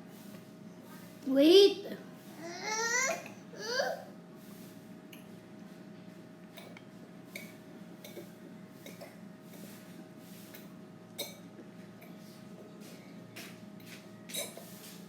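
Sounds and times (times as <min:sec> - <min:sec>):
cutlery clinking on a plate: 0:14.3 - 0:14.7.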